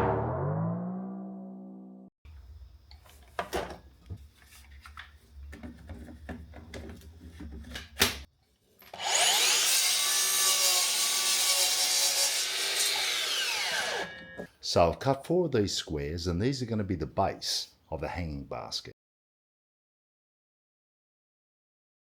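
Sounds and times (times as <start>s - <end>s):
low hum: 0.0s - 2.6s
power saw cutting wood: 8.9s - 14.5s.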